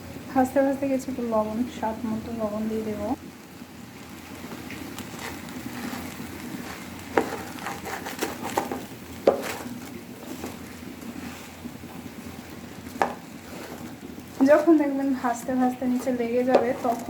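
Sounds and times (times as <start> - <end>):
rice sizzling in oil: 0.0 - 17.0
spatula knocking against pot: 8.6 - 9.7, 12.9 - 13.8, 16.0 - 17.0.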